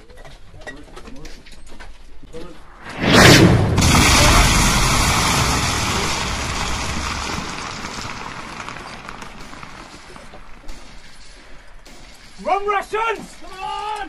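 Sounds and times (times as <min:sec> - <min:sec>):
loud rushing noise: 0:02.5 - 0:09.4.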